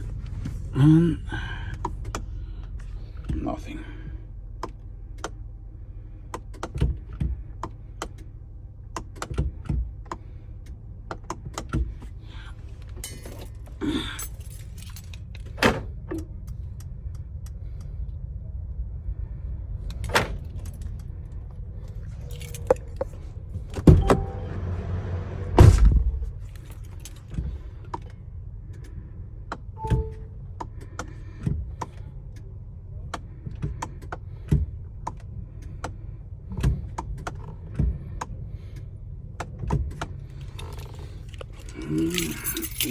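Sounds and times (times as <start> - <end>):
keys jangling: 13.0 - 15.5, 22.1 - 23.2, 40.4 - 42.9.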